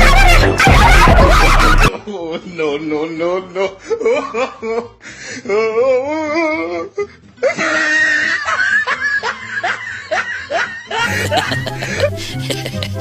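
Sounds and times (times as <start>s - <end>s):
music with steady beat: 0.0s - 1.9s, 11.0s - 13.0s
loud laughter: 0.0s - 2.1s, 7.4s - 13.0s.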